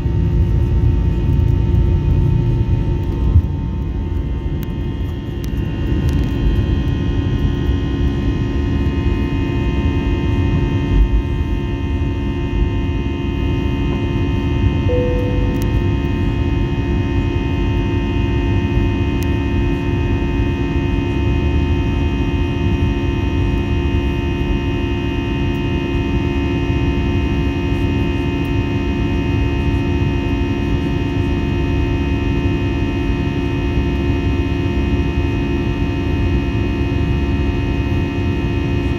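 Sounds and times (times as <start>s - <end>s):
jet engine cabin drone: 0.0s - 38.9s
brief tone: 14.8s - 17.4s.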